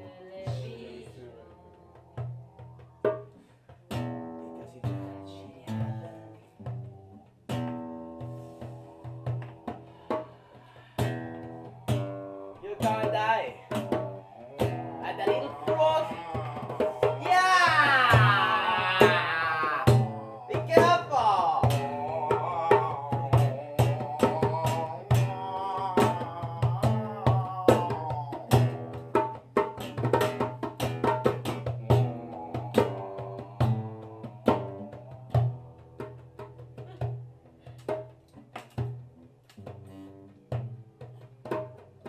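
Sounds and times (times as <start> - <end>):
hand percussion: 0.0 - 42.0
person wailing vocals: 11.4 - 29.2, 31.4 - 35.9.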